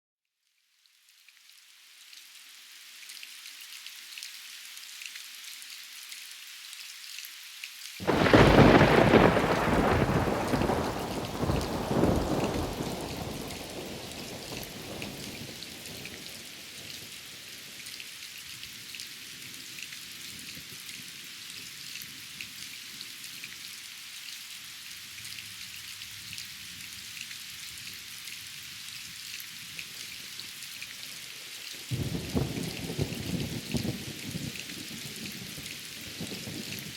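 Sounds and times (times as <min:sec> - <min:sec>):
rain pattering: 0:00.9 - 0:36.9
thunderclap rumbling: 0:08.0 - 0:15.6.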